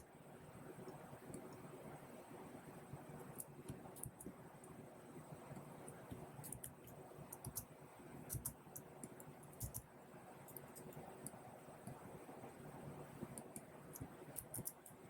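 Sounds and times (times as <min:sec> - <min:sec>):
computer keyboard typing clicks: 0:03.4 - 0:04.4, 0:05.6 - 0:07.7, 0:08.3 - 0:09.9, 0:10.5 - 0:12.0, 0:13.2 - 0:15.0.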